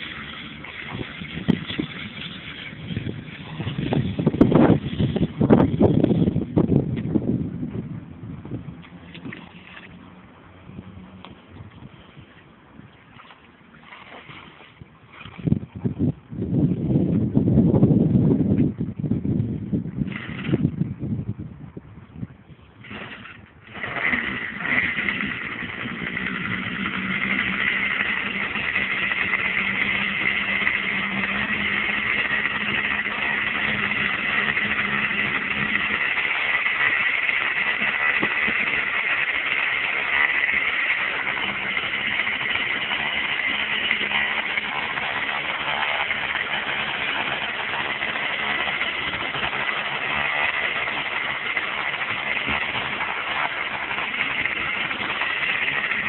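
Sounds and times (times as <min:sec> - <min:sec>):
string trimmer engine running: 0:00.0 - 0:06.7, 0:22.8 - 0:56.0.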